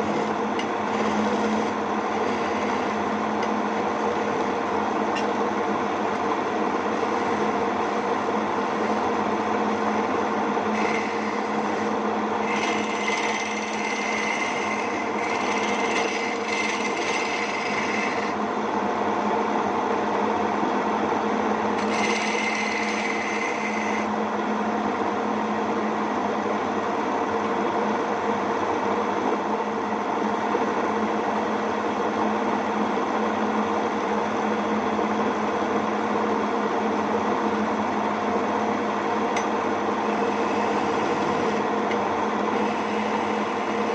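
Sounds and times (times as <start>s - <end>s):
cutting tool scraping whine: 0.0s - 5.4s, 6.1s - 18.4s, 21.7s - 24.1s, 39.4s - 43.9s
lathe motor running: 0.0s - 19.2s, 21.5s - 24.2s, 39.2s - 43.9s.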